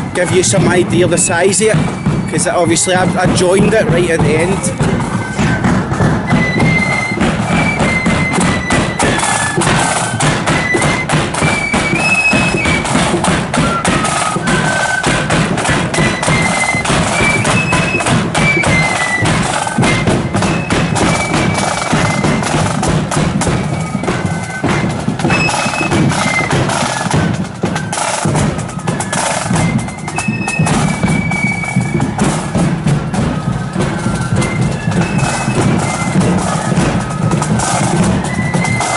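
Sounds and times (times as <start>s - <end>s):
bass drum beats: 0.0s - 28.6s
marching band playing: 0.0s - 38.9s
snare drum beats: 0.0s - 38.9s.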